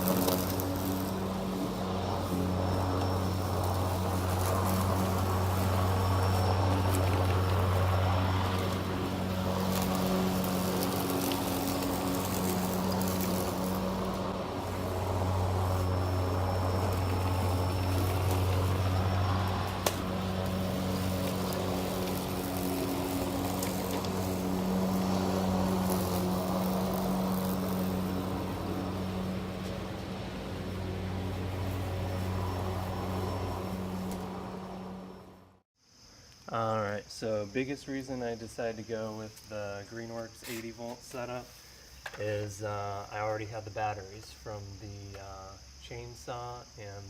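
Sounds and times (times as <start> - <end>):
electric lawn mower cutting grass: 0.0 - 35.6.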